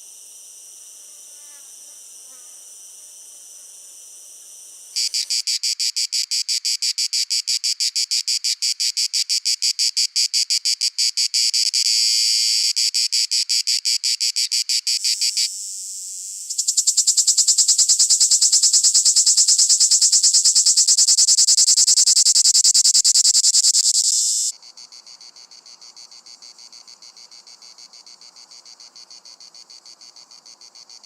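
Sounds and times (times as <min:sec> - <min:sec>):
cicada buzzing: 0:04.9 - 0:24.5.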